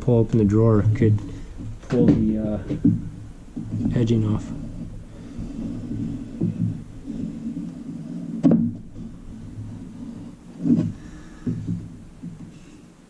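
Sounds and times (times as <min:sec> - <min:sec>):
low steady rumble: 0:00.0 - 0:13.0
knocks and thuds: 0:00.9 - 0:07.4, 0:08.4 - 0:10.0, 0:10.6 - 0:12.7.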